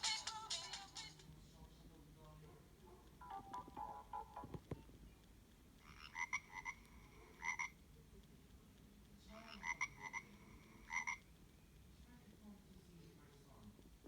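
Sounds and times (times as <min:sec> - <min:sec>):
mobile phone ringtone: 0:03.2 - 0:04.6.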